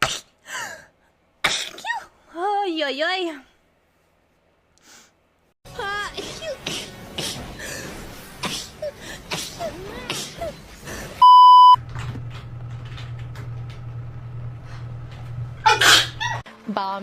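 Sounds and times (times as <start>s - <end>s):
steady low hum: 6.4s - 16.4s
censor bleep tone: 11.2s - 11.8s.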